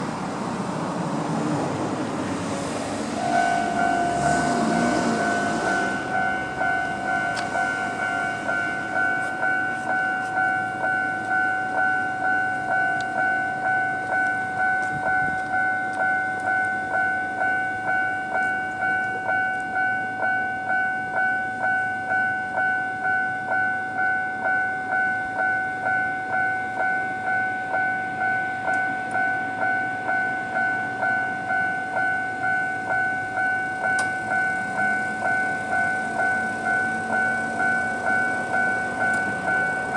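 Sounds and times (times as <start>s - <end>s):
low rising hum: 0.1s - 9.6s
level crossing alarm ringing: 3.0s - 39.9s.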